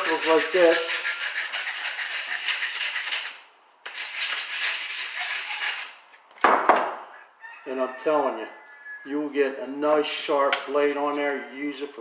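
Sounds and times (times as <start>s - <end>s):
knife blade rasping on sandpaper: 0.0s - 6.0s.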